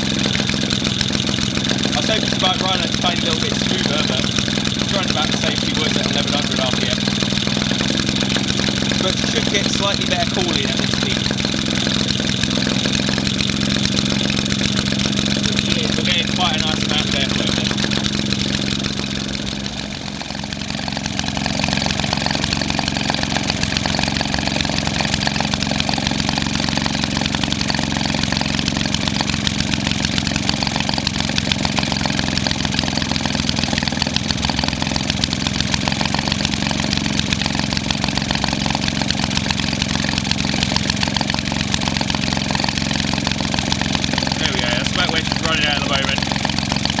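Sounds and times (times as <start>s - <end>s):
two-stroke engine running: 0.0s - 47.0s.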